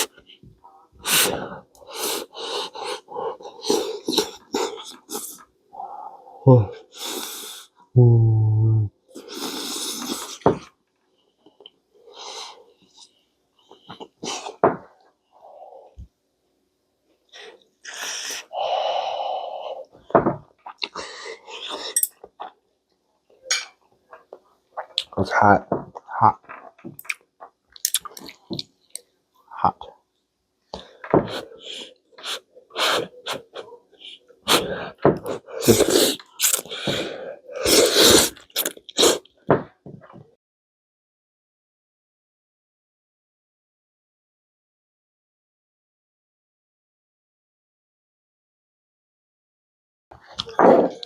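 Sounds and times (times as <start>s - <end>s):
person slurping noodles: 1.0s - 5.4s, 9.1s - 10.5s, 31.2s - 39.3s
chewing with clicking mouth sounds: 26.5s - 28.7s.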